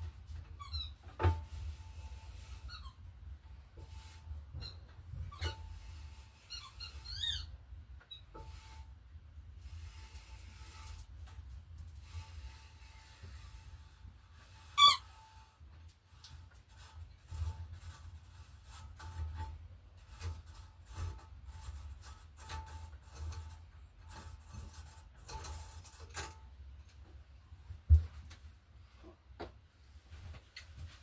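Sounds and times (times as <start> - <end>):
loud squeak: 6.5 - 7.5, 14.7 - 15.2
metallic clicks and scrapes: 9.6 - 27.0.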